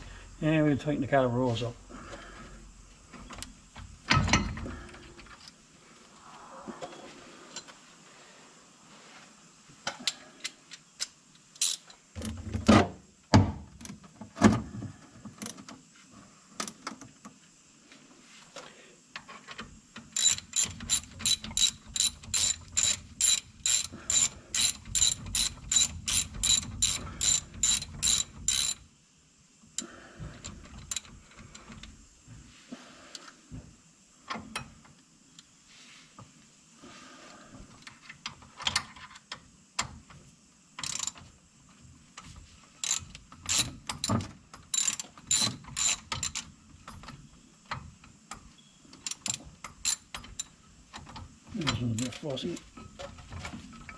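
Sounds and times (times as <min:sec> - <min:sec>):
ratchet wrench clicking: 0:11.6 - 0:11.9, 0:20.1 - 0:28.8, 0:40.8 - 0:41.2, 0:42.8 - 0:46.5, 0:49.0 - 0:50.5.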